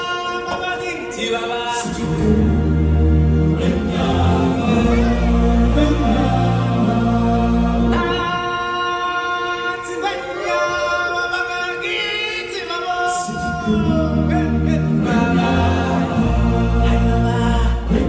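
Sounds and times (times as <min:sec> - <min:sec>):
singers in harmony: 0:00.0 - 0:18.0
low bass backing music: 0:01.8 - 0:08.5, 0:13.4 - 0:18.0.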